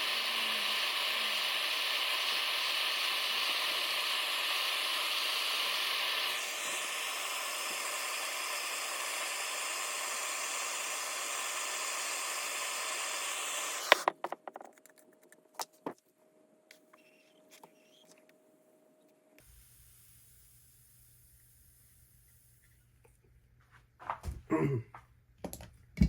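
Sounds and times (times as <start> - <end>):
gas torch hissing: 0.0 - 14.1, 19.4 - 22.8
sharp clicks and knocks: 13.9 - 16.0.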